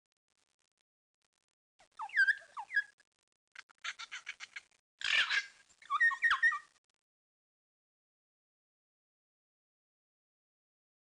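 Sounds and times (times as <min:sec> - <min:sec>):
bird whistling: 0:02.0 - 0:02.9, 0:05.2 - 0:06.7
bird chattering: 0:03.8 - 0:06.7.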